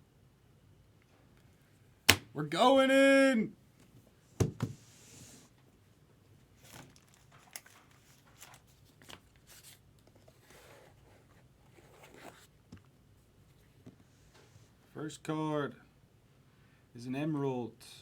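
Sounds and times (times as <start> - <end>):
packaging tearing and rustling: 6.6 - 9.8.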